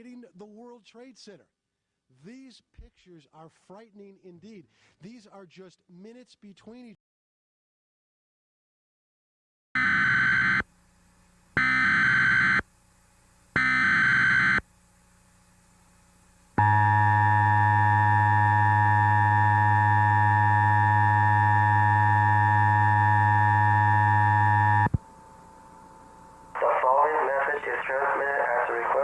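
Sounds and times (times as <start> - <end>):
buzzy two-tone attention signal: 16.6 - 25.0.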